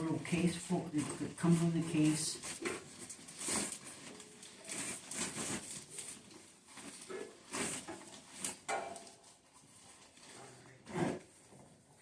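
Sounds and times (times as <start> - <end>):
packaging rustling: 0.0 - 10.4.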